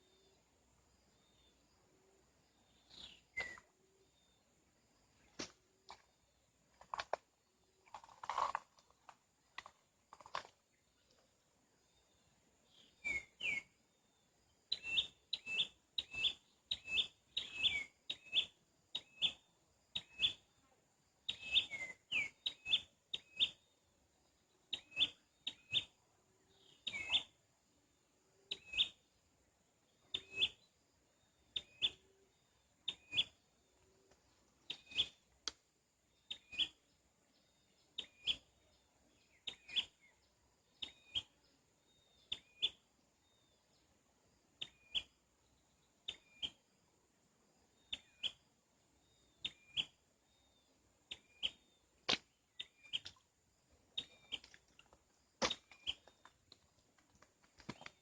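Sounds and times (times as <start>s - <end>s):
bird chirping: 2.5s - 4.4s, 11.8s - 13.8s, 14.6s - 20.4s, 21.3s - 23.7s, 24.7s - 27.4s, 28.5s - 29.1s, 29.9s - 35.4s, 36.1s - 43.9s, 44.6s - 46.7s, 47.8s - 53.2s, 53.8s - 56.3s.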